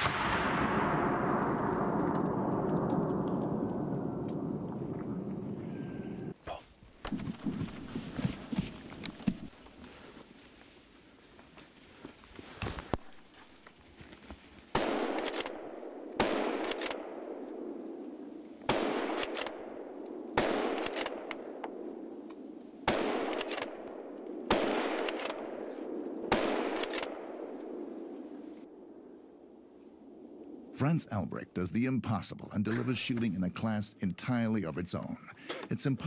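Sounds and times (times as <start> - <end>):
rifle shots echoing: 0.0 - 4.5, 14.7 - 18.0, 18.6 - 29.0.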